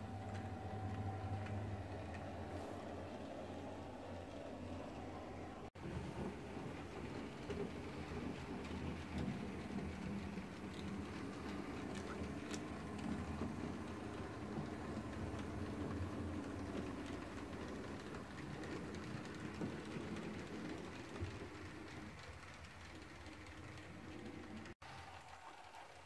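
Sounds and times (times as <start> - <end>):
wheel rumble on rails: 5.8 - 24.8.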